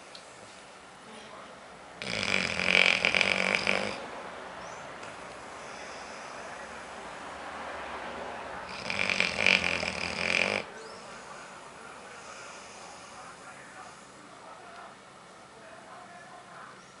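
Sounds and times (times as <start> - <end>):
dog snoring: 2.0 - 4.1, 8.6 - 14.1
dog breathing: 2.0 - 7.7, 8.6 - 14.3.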